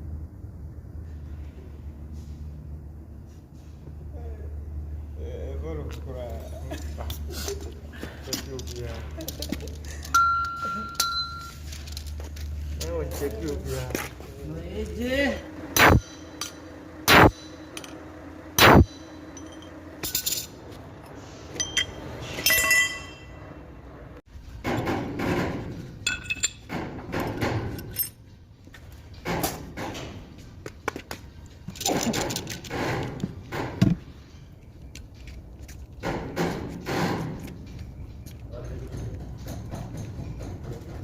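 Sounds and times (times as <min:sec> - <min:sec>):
metal parts clinking: 0:08.3 - 0:12.7, 0:15.9 - 0:18.1, 0:18.7 - 0:23.4, 0:26.0 - 0:28.4, 0:31.6 - 0:33.2
hammer striking steel: 0:15.7 - 0:20.5, 0:21.6 - 0:23.6.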